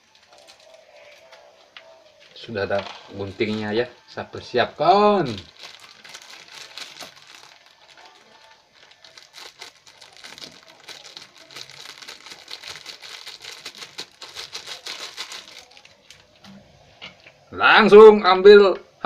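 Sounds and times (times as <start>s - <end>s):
packaging crinkling and rustling: 0.0s - 1.4s, 5.2s - 16.4s.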